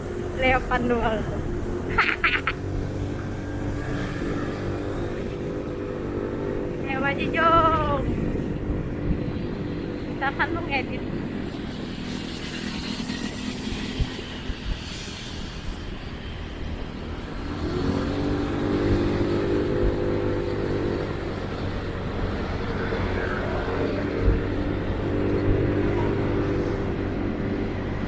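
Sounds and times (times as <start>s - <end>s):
motorcycle engine hum: 0.0s - 28.0s
passing vehicles: 0.0s - 28.0s
rushing air hiss: 11.7s - 19.8s.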